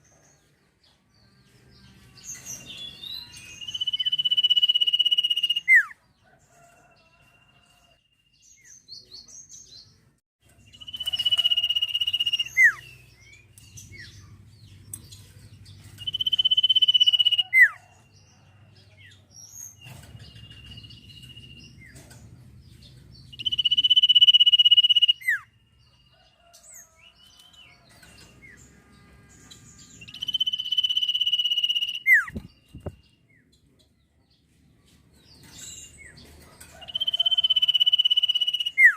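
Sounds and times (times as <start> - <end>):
soft bird chirps: 10.5 - 33.8, 34.4 - 38.9
songbird singing high note: 23.4 - 25.4, 29.5 - 33.0.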